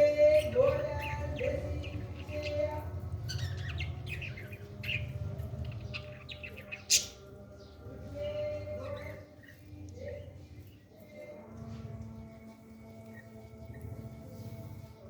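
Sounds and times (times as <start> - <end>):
parrot chirping and calling: 0.4 - 7.3.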